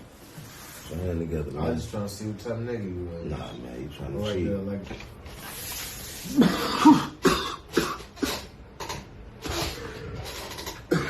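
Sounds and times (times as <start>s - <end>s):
man coughing hard: 6.3s - 8.6s
noisy breath: 9.4s - 10.6s.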